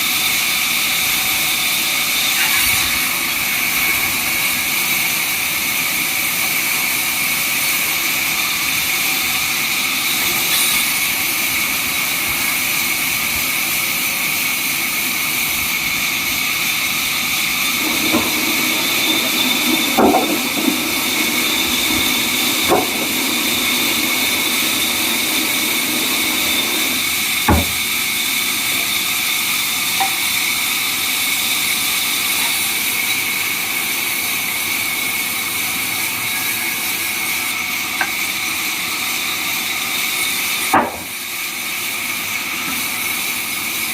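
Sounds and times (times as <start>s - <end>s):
sawmill saw whining: 0.2s - 32.0s
sharp knocks of timber: 17.9s - 27.9s.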